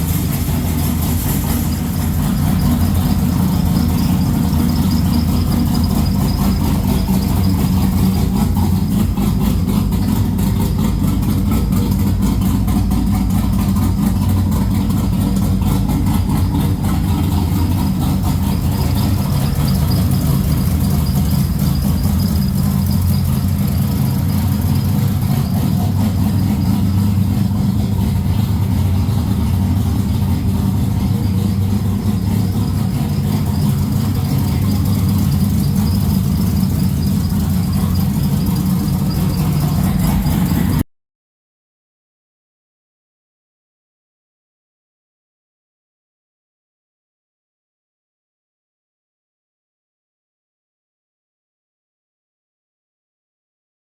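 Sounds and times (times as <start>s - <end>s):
engine idling: 0.0s - 40.8s.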